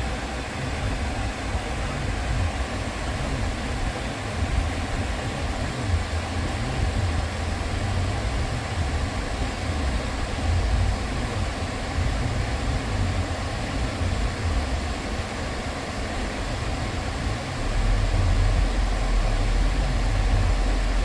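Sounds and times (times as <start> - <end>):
car air conditioning running: 0.0 - 21.0
low pulsing rumble: 4.4 - 14.7, 16.4 - 21.0.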